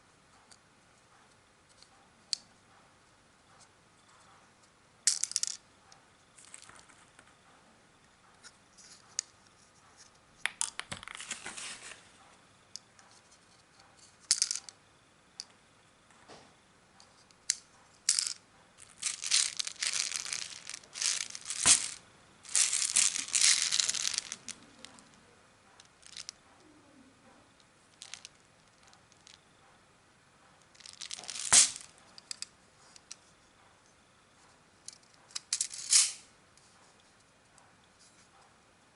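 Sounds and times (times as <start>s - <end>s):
crinkling and rustling: 6.4s - 7.4s, 8.4s - 12.3s, 18.1s - 25.2s, 25.8s - 26.4s, 27.9s - 29.4s, 30.6s - 33.3s.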